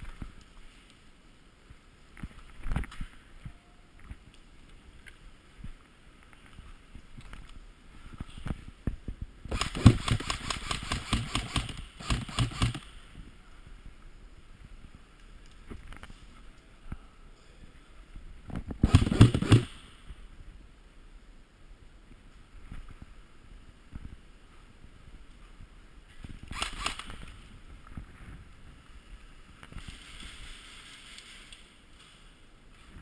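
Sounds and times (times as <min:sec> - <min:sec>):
airsoft rifle bursts: 0:09.5 - 0:12.9, 0:18.8 - 0:19.8, 0:26.5 - 0:27.3.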